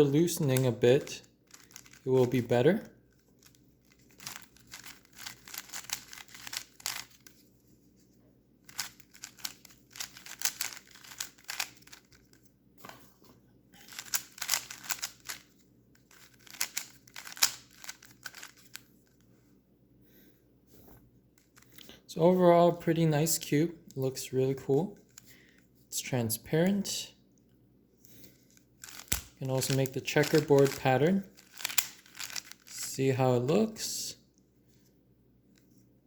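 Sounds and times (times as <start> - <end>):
plastic puzzle cube layers clicking: 8.7 - 12.0, 13.9 - 15.4, 16.1 - 18.8, 31.4 - 32.7.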